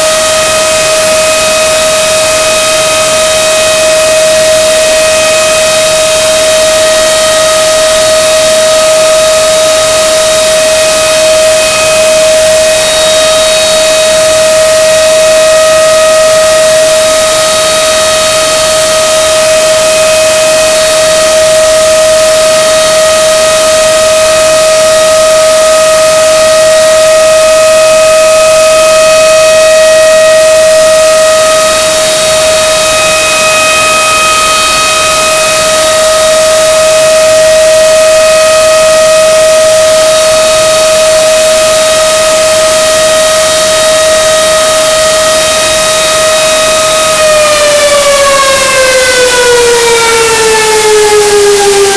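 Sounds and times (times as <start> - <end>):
high-pitched tone with hiss: 0.0 - 47.4
distorted chicken screech: 32.4 - 35.8.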